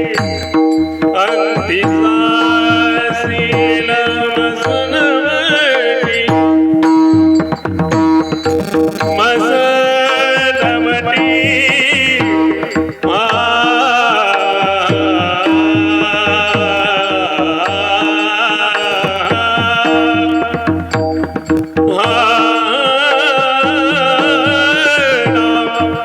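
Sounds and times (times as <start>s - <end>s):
drum strokes: 0.0s - 26.0s
man singing devotional melody: 0.0s - 26.0s.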